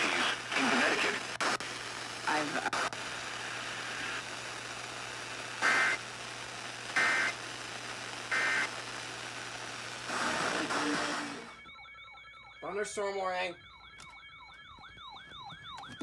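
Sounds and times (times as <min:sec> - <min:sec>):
broadcast hiss: 0:00.0 - 0:11.6.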